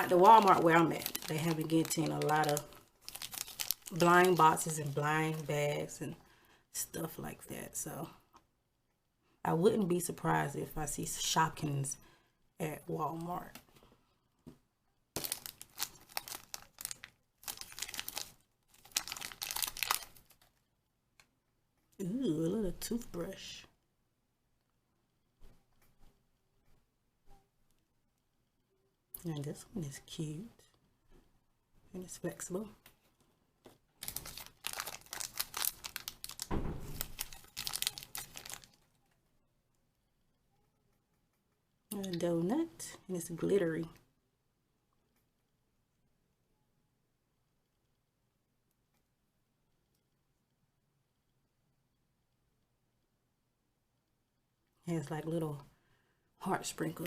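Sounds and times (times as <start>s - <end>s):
plastic packaging crinkling and tearing: 0.0s - 5.5s, 15.2s - 20.5s, 34.0s - 39.0s.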